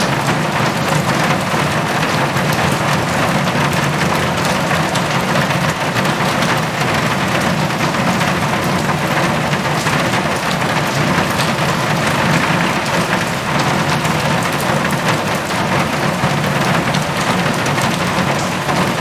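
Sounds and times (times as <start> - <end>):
heavy rain on a metal roof: 0.0 - 19.0.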